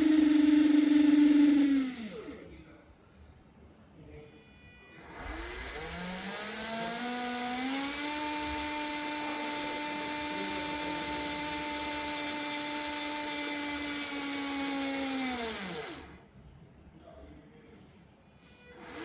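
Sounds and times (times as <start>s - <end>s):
electric motors whining: 0.0s - 2.5s, 5.0s - 16.2s, 18.7s - 19.0s.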